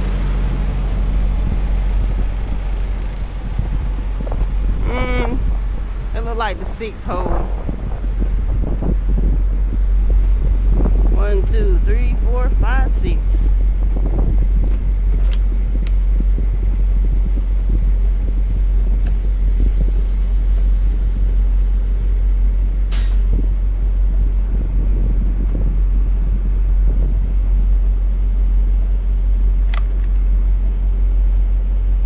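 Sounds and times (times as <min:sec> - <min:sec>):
truck engine idling: 0:00.0 - 0:32.0
air release hiss: 0:22.9 - 0:23.4
air brake click: 0:22.9 - 0:23.5.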